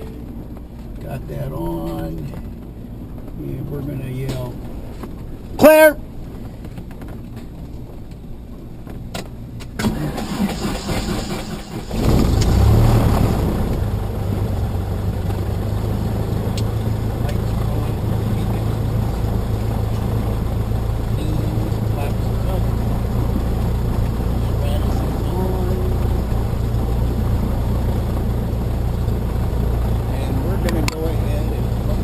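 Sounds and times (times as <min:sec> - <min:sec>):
starter cranking engine: 0:09.8 - 0:12.7
aircraft engine idling: 0:13.3 - 0:32.0.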